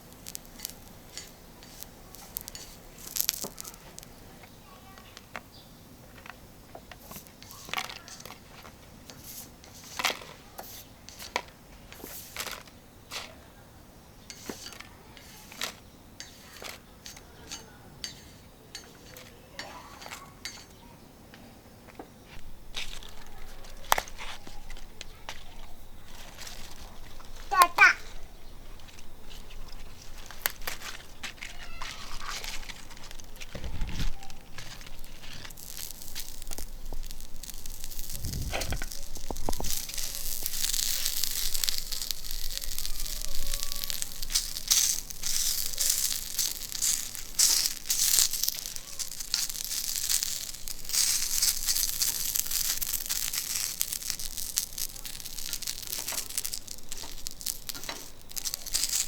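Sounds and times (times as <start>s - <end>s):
food sizzling in oil on griddle: 0.0s - 5.3s, 7.0s - 11.4s, 12.0s - 12.6s, 14.2s - 15.6s, 16.2s - 20.6s, 29.2s - 59.0s.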